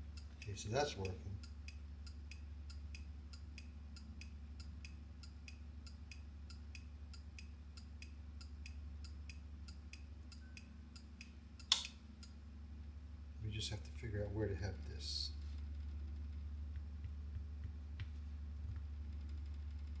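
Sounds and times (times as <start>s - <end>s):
turn-signal relay clicking: 0.0s - 12.4s.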